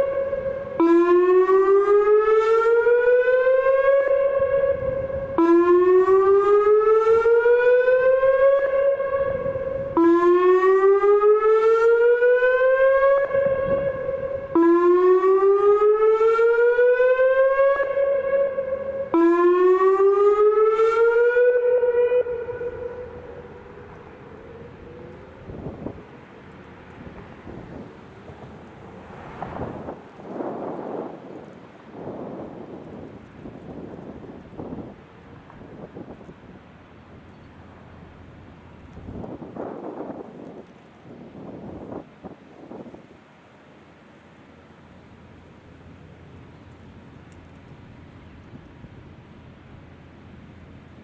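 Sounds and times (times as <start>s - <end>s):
warning siren whooping: 0.0s - 35.0s.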